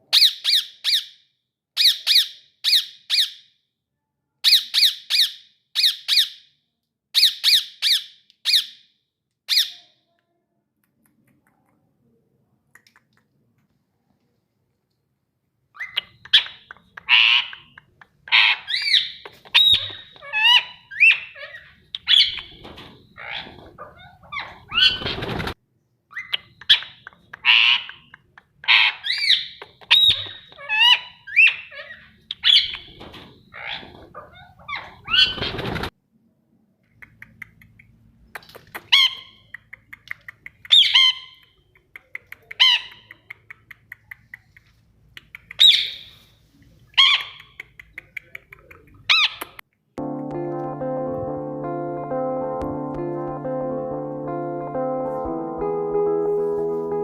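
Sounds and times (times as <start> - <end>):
parrot squawking and chirping: 0.1 - 1.2, 4.4 - 6.4, 7.1 - 8.8, 9.5 - 9.8, 15.7 - 25.4, 26.1 - 35.7, 38.8 - 39.6, 40.2 - 41.6, 42.5 - 43.2, 45.4 - 46.2, 47.0 - 47.7.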